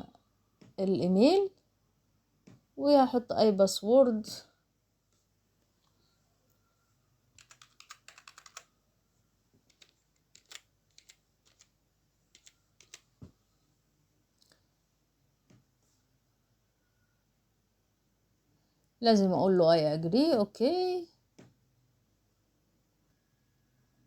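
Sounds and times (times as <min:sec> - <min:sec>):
typing on computer keyboard: 0:07.4 - 0:08.7, 0:09.7 - 0:11.7, 0:12.3 - 0:13.1.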